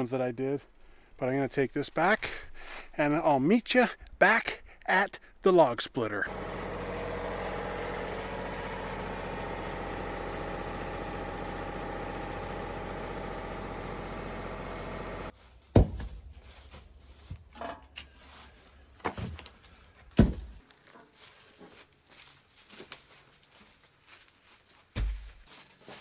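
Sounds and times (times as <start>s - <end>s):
engine running: 6.3s - 15.3s.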